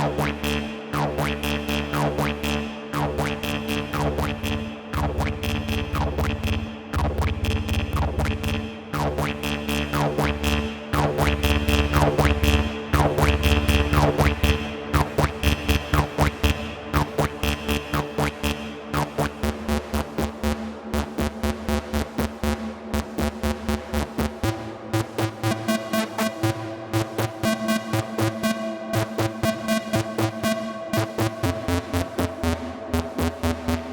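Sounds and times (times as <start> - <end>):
heavy pulsing bass: 0.0 - 33.9
rapid repeating synth hits: 3.0 - 16.4.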